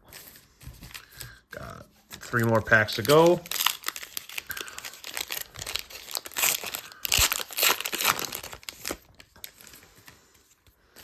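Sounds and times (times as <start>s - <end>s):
foil wrapper crinkling and tearing: 0.9s - 10.1s.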